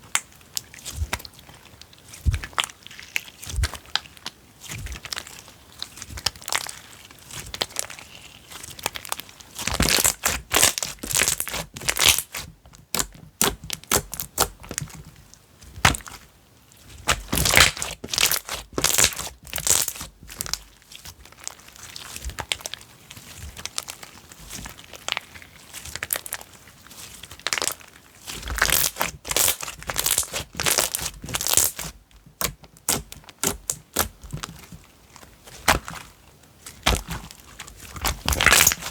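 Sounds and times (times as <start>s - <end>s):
slime crackling and popping: 7.4s - 15.0s, 15.8s - 16.2s, 17.0s - 20.7s, 24.6s - 38.9s.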